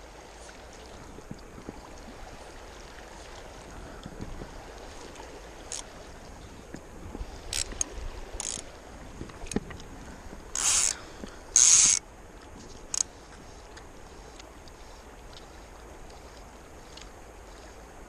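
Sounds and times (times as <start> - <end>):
fishing reel ratcheting: 5.7 - 5.9, 7.5 - 8.7, 10.5 - 11.0, 11.6 - 12.0, 12.9 - 13.1.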